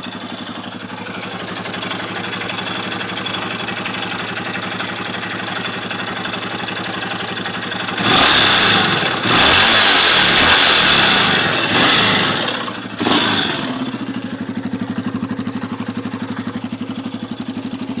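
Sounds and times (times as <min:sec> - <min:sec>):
quad engine idling and revving: 0:00.0 - 0:18.0.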